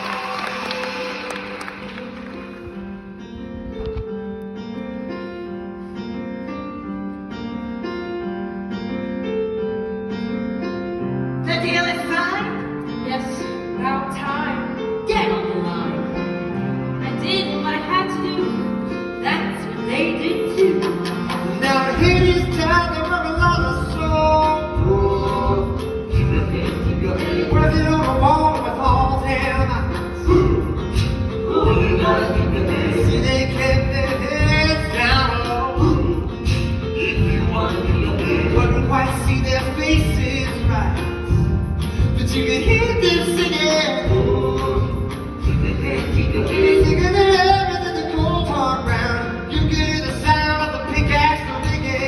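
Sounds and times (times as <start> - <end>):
live band music: 0.0 - 5.0, 14.7 - 52.0
person singing: 20.6 - 52.0
low beat: 22.0 - 43.2.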